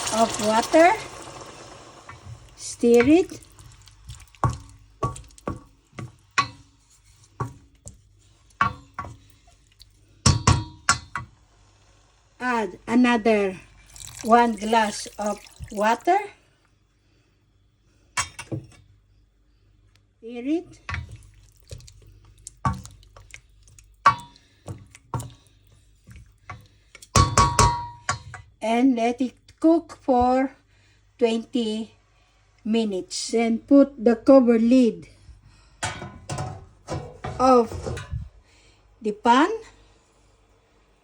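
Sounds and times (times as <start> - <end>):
utensil stirring food in a pan: 0.0 - 12.5, 13.3 - 16.0, 20.6 - 28.6
utensil knocking against pan: 4.4 - 6.7, 8.6 - 9.2, 10.3 - 11.3, 24.0 - 25.3, 26.5 - 28.4.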